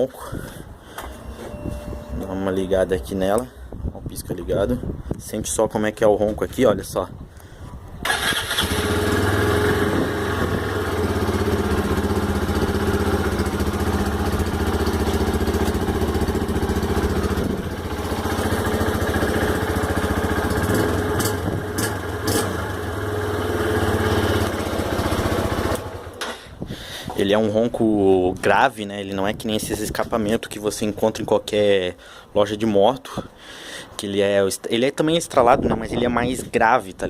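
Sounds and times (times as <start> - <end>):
motorcycle engine idling: 8.1 - 26.1.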